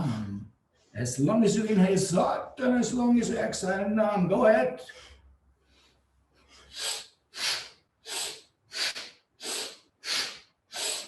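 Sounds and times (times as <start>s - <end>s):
person breathing forcefully through nose: 4.9s - 11.0s.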